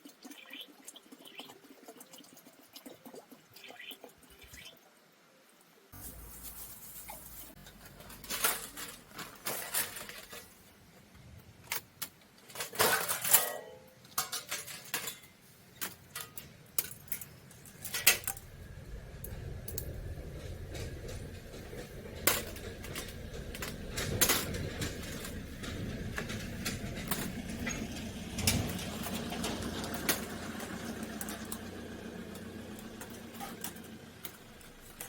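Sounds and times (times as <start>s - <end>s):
camping gear clinking: 6.0s - 10.7s, 19.3s - 35.0s
low rumble: 18.4s - 33.3s.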